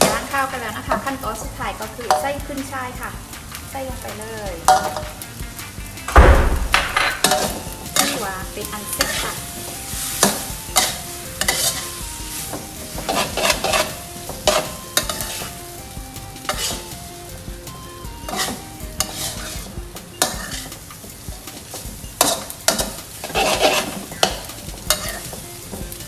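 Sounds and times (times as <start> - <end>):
food sizzling in a pan: 0.0 - 26.0
spatula scraping a pan: 8.9 - 15.4, 18.3 - 21.2, 22.2 - 25.4.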